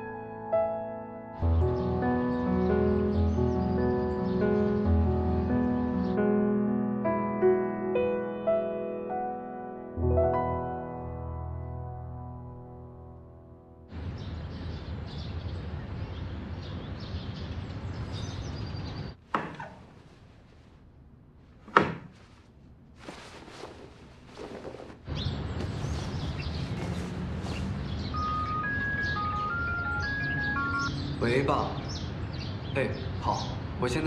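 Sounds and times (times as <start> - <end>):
sharp knocks: 19.2 - 19.8, 21.6 - 22.2.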